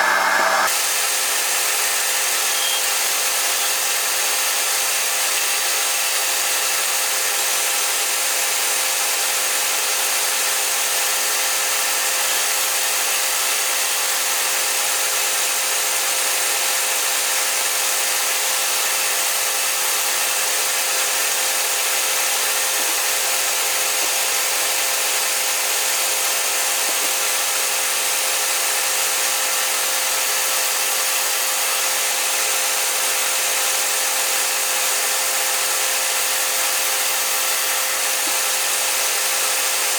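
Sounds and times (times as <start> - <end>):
lathe machine hum: 0.0 - 3.7
lathe cutting hiss: 0.0 - 7.5.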